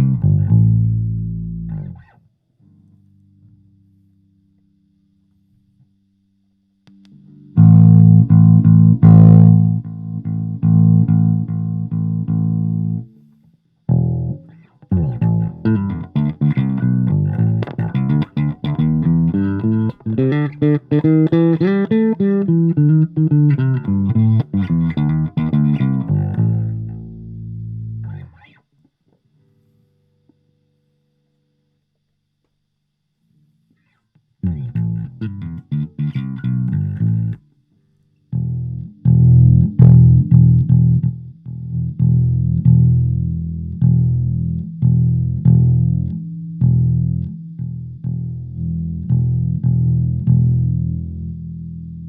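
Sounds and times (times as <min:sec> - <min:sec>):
electric bass notes: 0:00.0 - 0:04.6, 0:06.8 - 0:13.2, 0:13.8 - 0:28.6, 0:34.4 - 0:37.5, 0:38.3 - 0:52.0.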